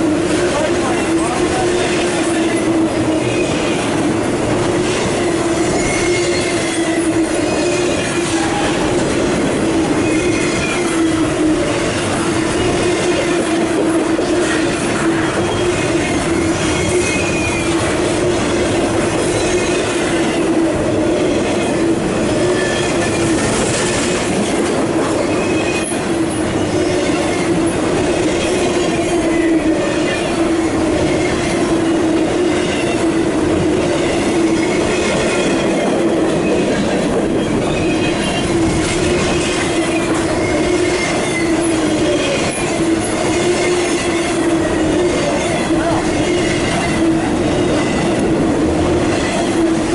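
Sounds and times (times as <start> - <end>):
freight train rolling past: 0.0 - 49.9
high-pitched wheel squeals: 5.4 - 9.0, 9.8 - 13.6, 15.3 - 17.8, 34.0 - 48.3.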